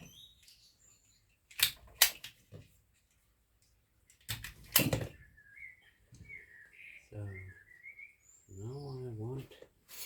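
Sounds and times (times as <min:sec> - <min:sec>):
sharp clicks: 0:01.5 - 0:02.4.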